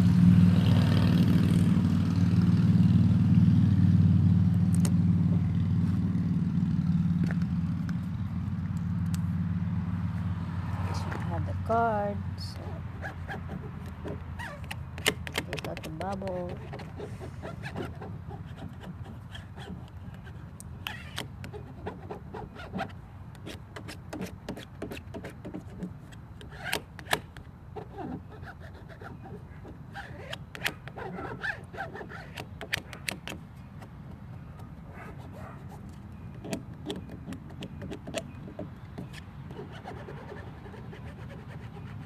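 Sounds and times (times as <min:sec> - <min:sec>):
plastic card scraping vinyl: 0:12.5 - 0:42.0.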